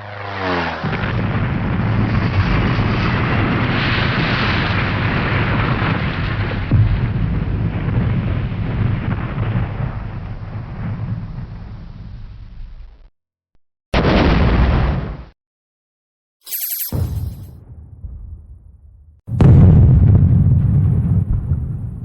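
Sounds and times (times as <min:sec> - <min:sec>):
explosion rumble: 0:16.9 - 0:22.0.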